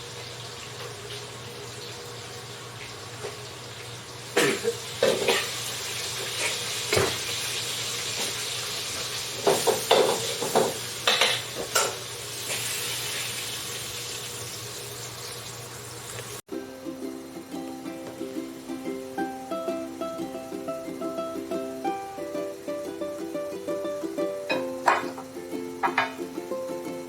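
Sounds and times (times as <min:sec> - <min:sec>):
dishes and utensils clinking: 0:04.4 - 0:05.6, 0:09.4 - 0:12.0, 0:24.5 - 0:26.4
steady hiss: 0:16.1 - 0:27.0.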